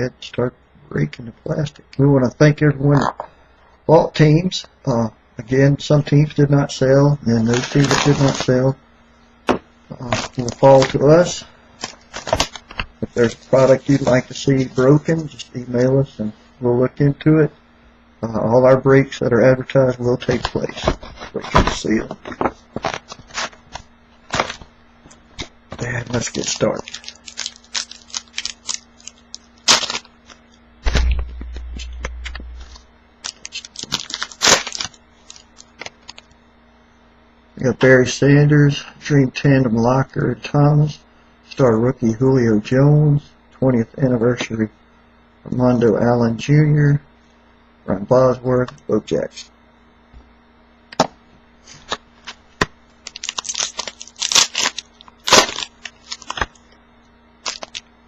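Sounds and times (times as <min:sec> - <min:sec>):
foil packs crinkling and tearing: 0:07.4 - 0:08.6, 0:10.0 - 0:11.1, 0:11.8 - 0:15.2, 0:20.3 - 0:24.7, 0:25.4 - 0:30.4, 0:32.7 - 0:36.4, 0:51.7 - 0:56.8, 0:57.4 - 0:57.9
heavy thump: 0:30.8 - 0:32.8
sharp crack: 0:30.8 - 0:32.8
low rumble: 0:30.8 - 0:32.9.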